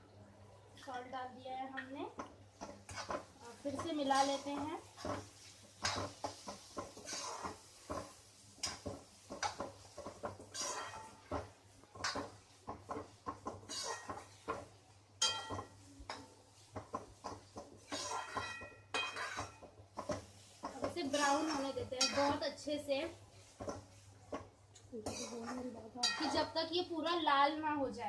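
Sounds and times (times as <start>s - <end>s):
onions frying in oil: 0.8s - 28.0s
spoon scraping pan: 2.2s - 26.7s.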